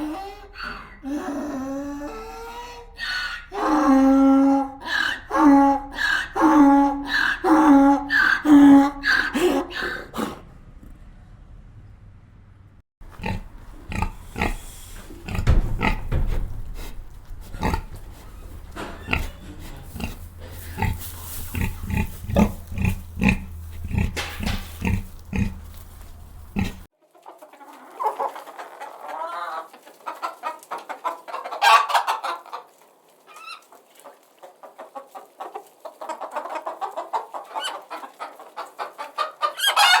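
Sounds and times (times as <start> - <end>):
chickens clucking: 0.0 - 10.2, 13.0 - 40.0
deep animal grunting: 13.1 - 26.9.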